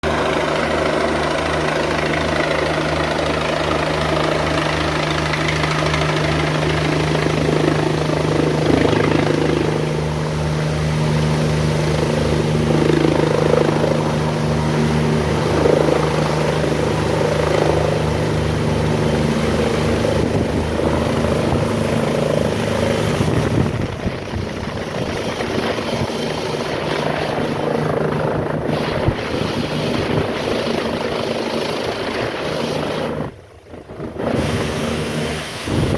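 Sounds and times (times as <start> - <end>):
helicopter engine whine: 0.0 - 35.9
helicopter rotor beating: 0.0 - 35.9.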